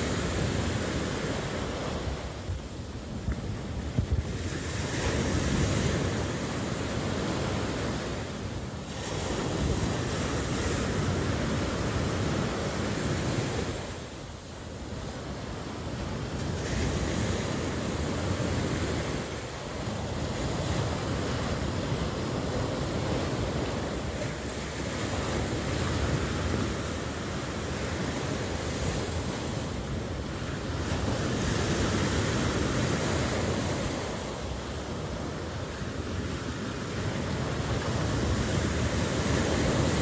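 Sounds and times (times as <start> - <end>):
ocean waves breaking: 0.0 - 40.0.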